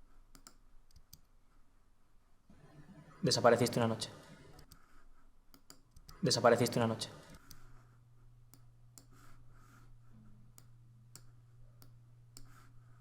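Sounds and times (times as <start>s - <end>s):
computer mouse clicks: 0.3s - 1.4s, 4.5s - 6.3s, 7.3s - 7.8s, 8.5s - 9.3s, 10.5s - 12.7s.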